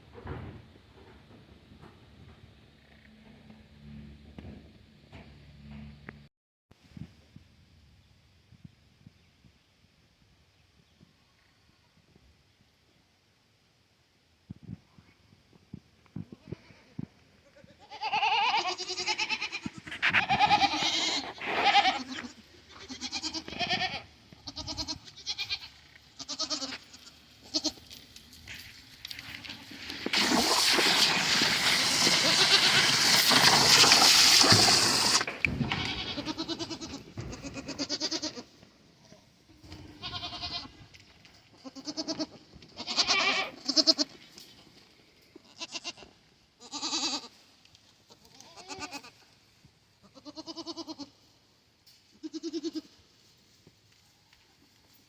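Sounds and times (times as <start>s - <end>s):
goats bleating: 16.5s - 27.8s, 34.4s - 38.5s, 39.7s - 40.8s, 41.6s - 44.2s, 45.4s - 47.4s, 48.1s - 49.2s, 50.1s - 51.2s, 52.2s - 53.0s
loud hissing rush: 30.1s - 35.6s.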